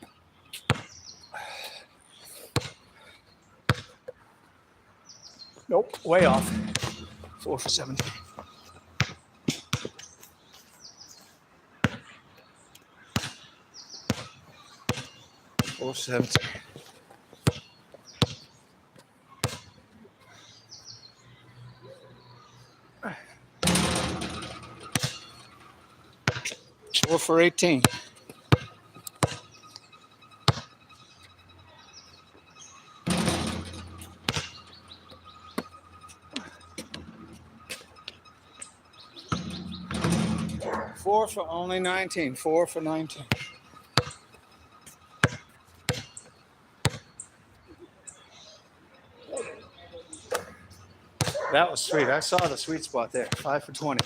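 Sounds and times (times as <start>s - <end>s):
basketball bouncing on court: 6.2s - 9.9s, 14.9s - 15.8s, 23.6s - 25.6s, 26.2s - 29.5s, 30.5s - 30.7s, 33.0s - 37.9s, 39.3s - 41.0s, 43.3s - 44.2s, 45.2s - 46.2s, 46.8s - 47.1s
high bird chirps: 28.0s - 42.2s.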